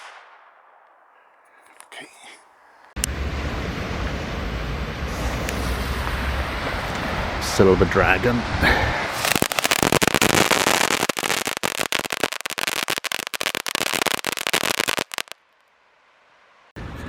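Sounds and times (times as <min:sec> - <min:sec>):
ground firework crackling: 0:00.0 - 0:03.1, 0:05.1 - 0:07.6, 0:08.6 - 0:15.7.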